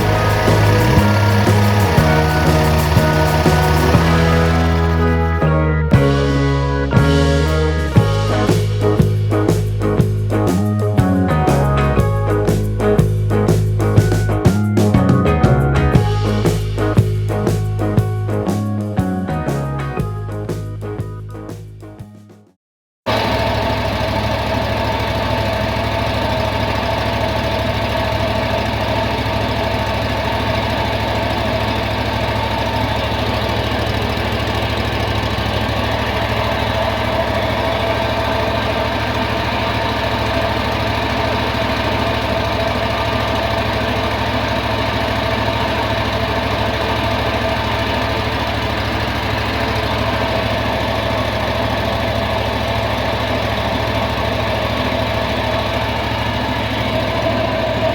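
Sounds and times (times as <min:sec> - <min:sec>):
mower engine running steadily: 0:00.0 - 0:21.2, 0:23.1 - 0:57.9.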